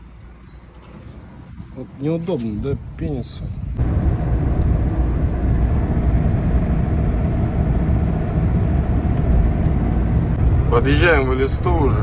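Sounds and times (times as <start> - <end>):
truck interior road drone: 3.6 - 12.0.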